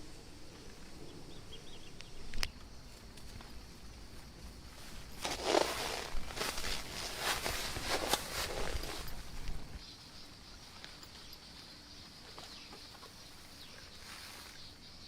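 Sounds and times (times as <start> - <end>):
footsteps crunching on forest floor: 2.9 - 9.8.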